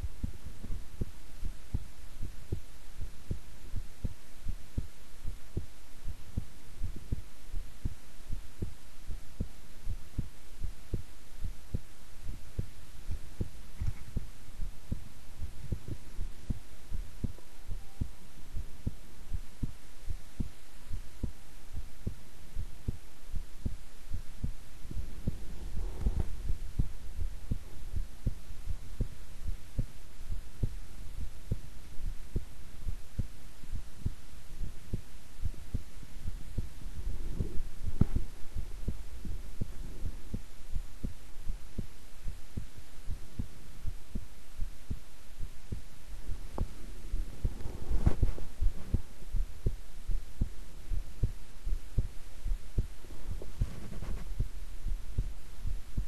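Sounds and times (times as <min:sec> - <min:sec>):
heartbeat thumps: 0:00.0 - 0:56.0
brief rubbing noise: 0:47.4 - 0:49.0, 0:53.3 - 0:54.4.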